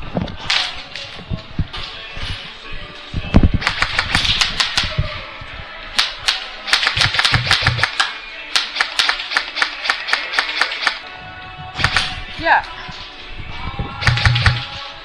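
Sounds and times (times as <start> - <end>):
airsoft guns firing: 3.6 - 5.0, 6.0 - 11.0, 11.8 - 12.3, 14.0 - 14.8.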